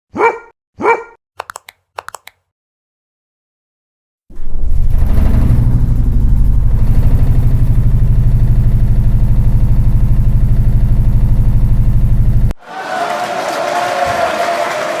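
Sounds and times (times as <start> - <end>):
engine running low and loud: 4.3 - 12.6.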